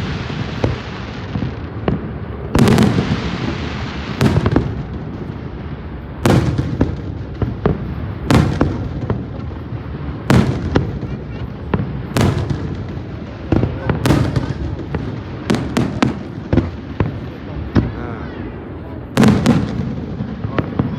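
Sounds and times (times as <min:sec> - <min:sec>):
fireworks booming: 0:00.0 - 0:20.9
small firework pops: 0:10.3 - 0:18.0.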